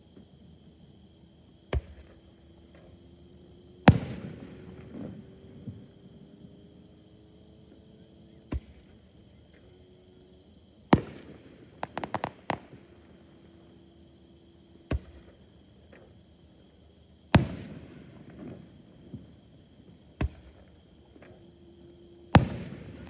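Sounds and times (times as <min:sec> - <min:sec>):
firework bangs: 0:03.9 - 0:05.8, 0:11.0 - 0:12.8, 0:17.4 - 0:18.8, 0:22.4 - 0:23.0
fireworks bursting with rumble: 0:03.9 - 0:05.9, 0:11.0 - 0:13.2, 0:17.3 - 0:19.4, 0:22.3 - 0:23.0
crackling pops: 0:11.8 - 0:12.8.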